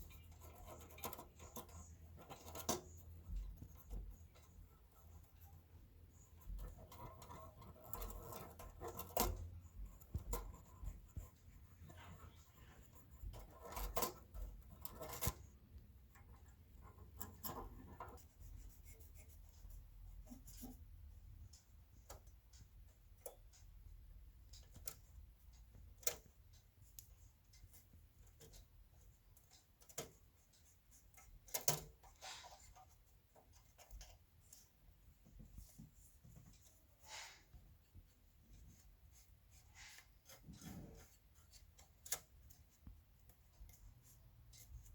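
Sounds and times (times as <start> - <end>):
soft scraping and rubbing: 0.0 - 21.3, 27.5 - 44.9.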